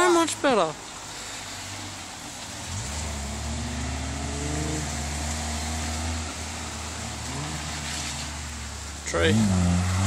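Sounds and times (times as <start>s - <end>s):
rain hissing: 0.0s - 10.0s
car engine revving: 2.5s - 10.0s.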